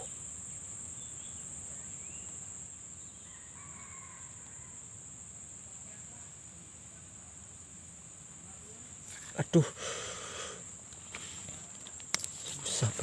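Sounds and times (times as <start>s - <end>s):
crickets chirping: 0.0s - 13.0s
distant rooster crowing: 3.2s - 5.0s.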